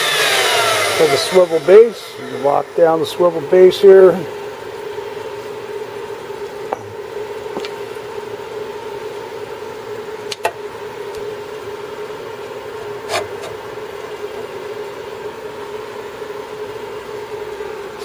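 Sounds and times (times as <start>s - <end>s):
band saw motor hum: 0.0s - 8.5s.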